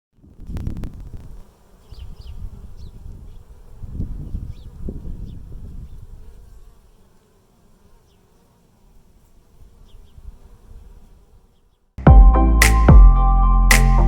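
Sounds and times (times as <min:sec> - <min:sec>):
bees buzzing: 0:00.9 - 0:11.7.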